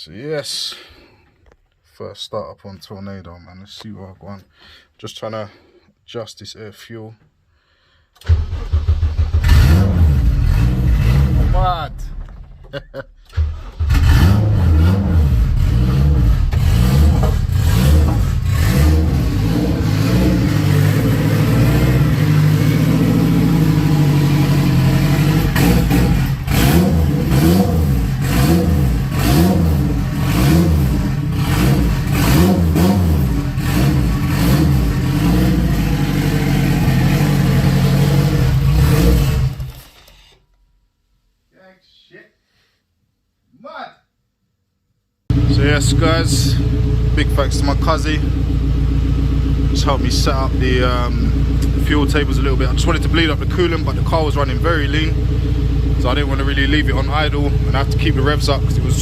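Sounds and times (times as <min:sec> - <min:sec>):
car engine revving: 0:08.2 - 0:12.4, 0:13.3 - 0:40.0, 0:45.3 - 0:59.0.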